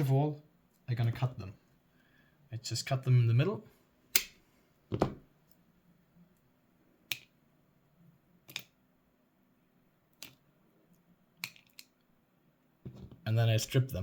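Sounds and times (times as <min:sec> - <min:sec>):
wire cutter snapping: 0:04.1 - 0:04.4.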